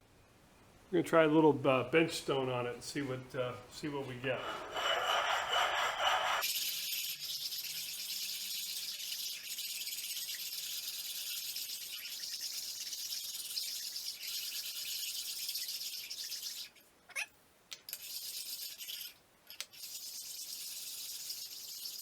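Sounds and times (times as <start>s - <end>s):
stone scraping on metal: 4.0s - 6.5s.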